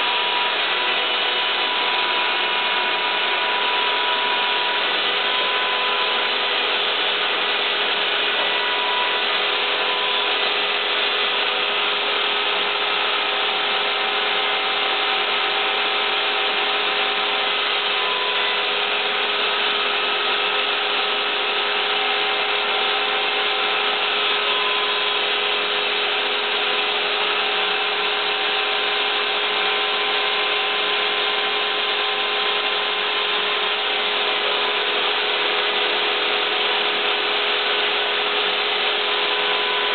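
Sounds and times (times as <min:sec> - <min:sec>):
cnc router running with hum: 0:00.0 - 0:39.9
stepper motors whining tones: 0:00.0 - 0:39.9.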